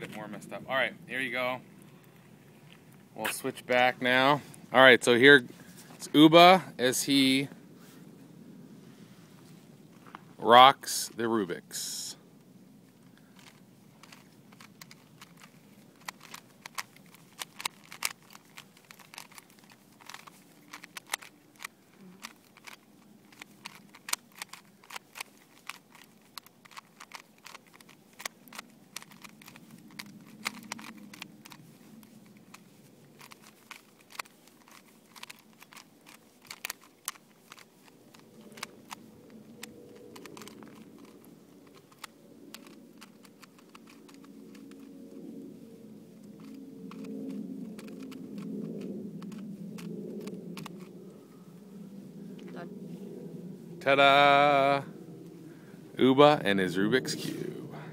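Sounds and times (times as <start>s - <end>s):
puzzle cube layers clicking: 13.4s - 45.3s, 46.2s - 51.0s.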